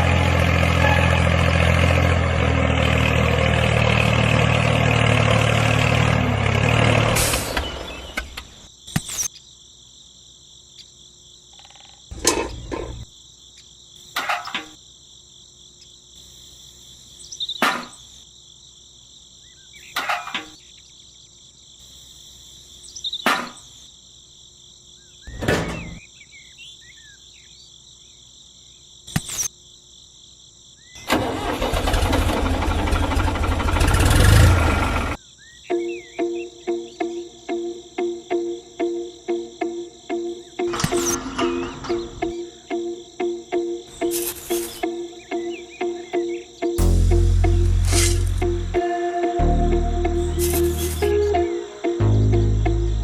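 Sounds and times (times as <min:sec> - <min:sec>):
small engine running: 0:31.1 - 0:35.2
high-pitched buzz: 0:46.8 - 0:53.0.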